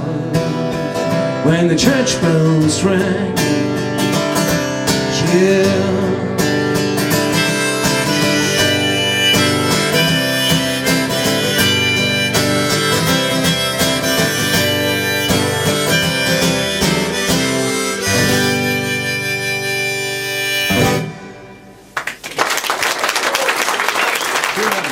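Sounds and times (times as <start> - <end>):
strummed acoustic guitar: 0.0 - 22.0
harmonica melody: 2.8 - 21.9.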